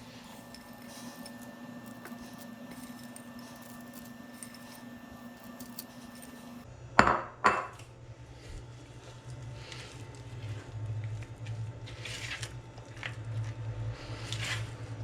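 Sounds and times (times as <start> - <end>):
kitchenware knocks with ring: 7.0 - 7.8.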